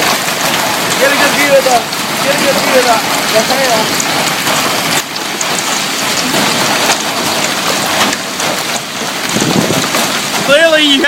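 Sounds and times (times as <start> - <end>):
hail and rain pelting a bus: 0.0 - 11.0.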